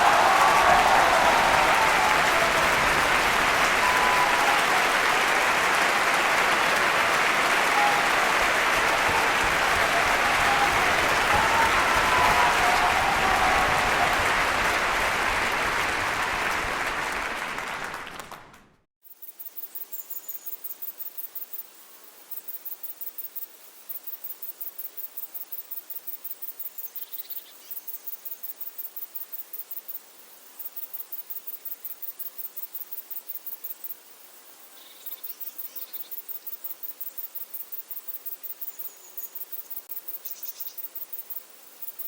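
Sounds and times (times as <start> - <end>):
indoor crowd applauding and cheering: 0.0 - 18.9.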